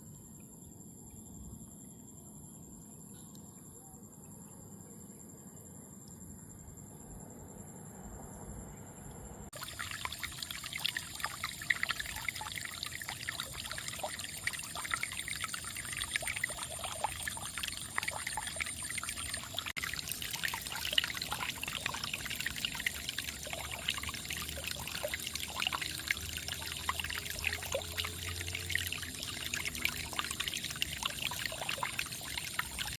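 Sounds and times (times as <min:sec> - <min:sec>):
thin high steady tone: 0:08.6 - 0:33.0
water trickling and pouring: 0:09.5 - 0:33.0.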